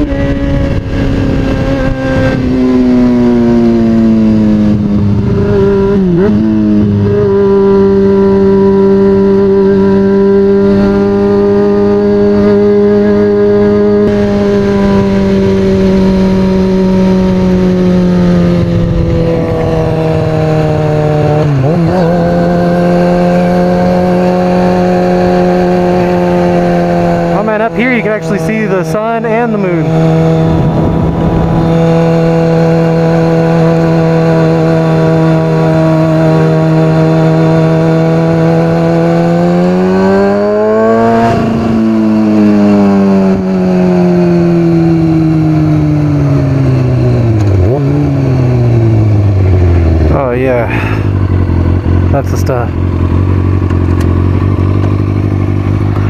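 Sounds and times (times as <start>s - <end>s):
motorcycle engine high-revving: 0.0s - 56.0s.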